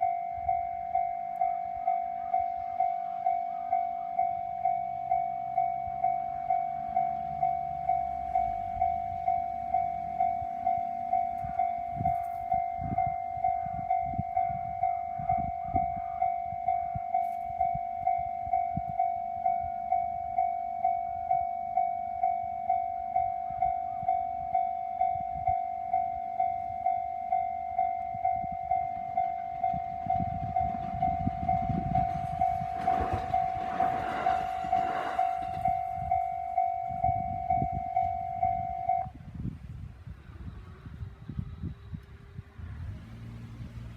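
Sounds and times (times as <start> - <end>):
level crossing warning bell: 0.0 - 39.2
train rumbling past: 0.0 - 43.9
wheels clacking over rail joints: 28.8 - 37.2.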